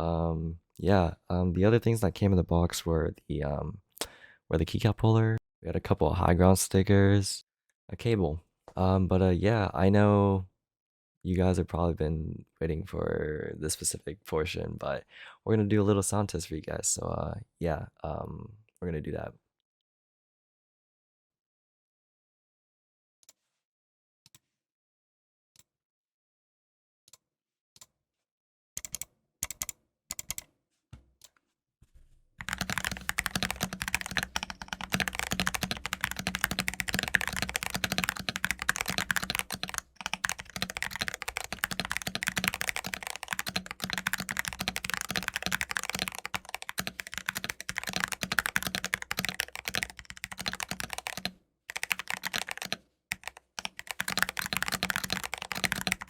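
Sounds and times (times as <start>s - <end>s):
mechanical keyboard typing: 28.8s - 30.4s, 32.4s - 56.0s.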